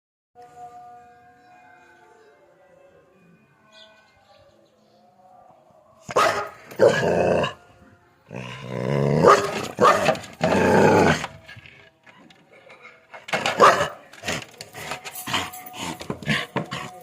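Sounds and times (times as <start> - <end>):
dog barking: 6.1 - 7.0, 9.2 - 10.2, 13.5 - 14.0.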